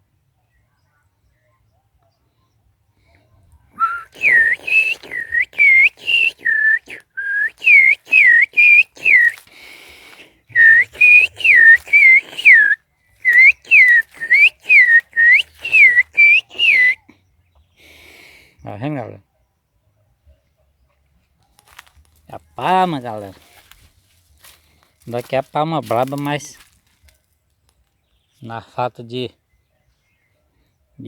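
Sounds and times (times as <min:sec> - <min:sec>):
person whistling swooping notes: 0:03.8 - 0:09.5, 0:10.5 - 0:17.0.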